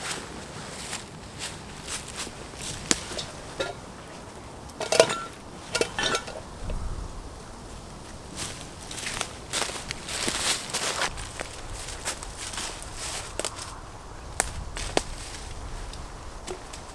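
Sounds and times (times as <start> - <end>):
metal gear knocking and clinking: 3.1 - 3.8, 4.8 - 6.5.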